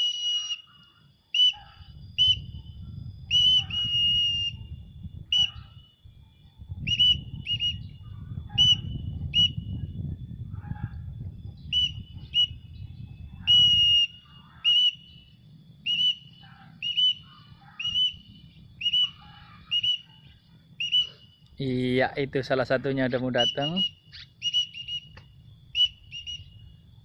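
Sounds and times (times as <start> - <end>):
short high whistles: 0.0 - 0.7, 18.8 - 21.4.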